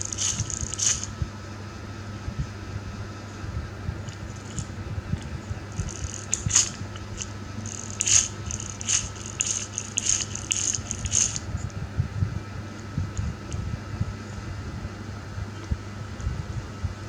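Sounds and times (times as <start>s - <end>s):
toy car rattling and clicking: 0.0s - 1.1s, 5.8s - 11.5s
steady low hum: 0.0s - 17.0s.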